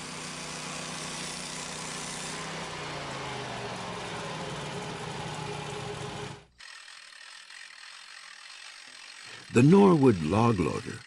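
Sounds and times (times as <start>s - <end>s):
band sawmill running: 0.0s - 11.0s.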